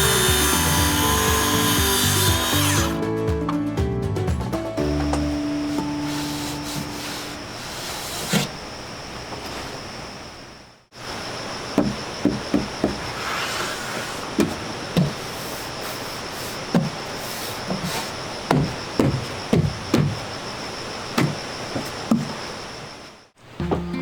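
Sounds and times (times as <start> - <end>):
background music: 0.0 - 7.3, 23.6 - 24.0
steady hiss: 5.3 - 23.6.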